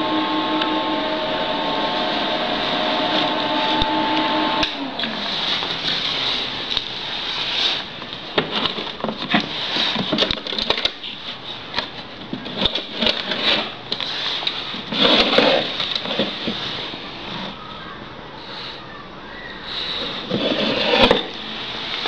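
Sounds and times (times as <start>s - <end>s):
machine hissing: 0.0s - 7.8s.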